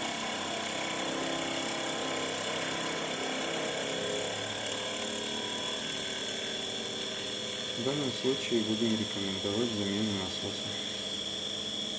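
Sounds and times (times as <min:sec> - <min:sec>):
circulation pump humming: 0:00.0 - 0:11.9.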